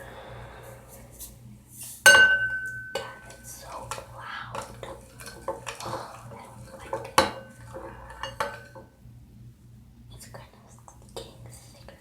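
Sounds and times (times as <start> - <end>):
utensil clinking against bowl: 2.1 - 3.4.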